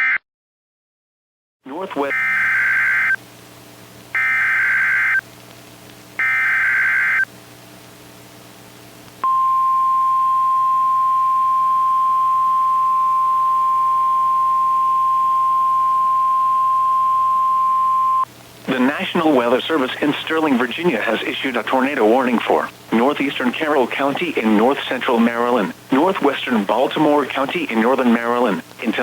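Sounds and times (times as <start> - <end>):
steady alarm tone: 2.1 - 3.2, 4.2 - 5.2, 6.2 - 7.3, 9.2 - 18.2.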